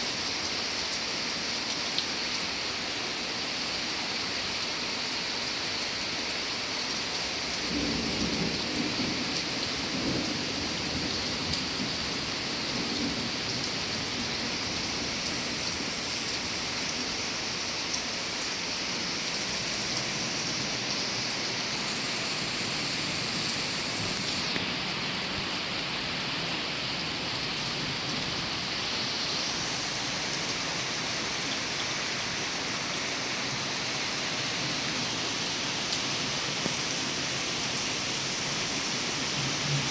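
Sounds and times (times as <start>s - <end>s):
steady rain falling: 0.0s - 39.9s
low rumble of thunder: 7.6s - 15.2s.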